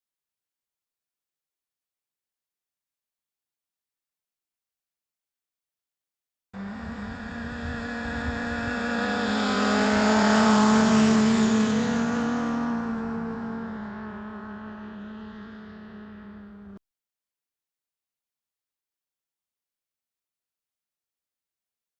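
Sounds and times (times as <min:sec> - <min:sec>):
motorcycle passing by: 0:06.6 - 0:16.8.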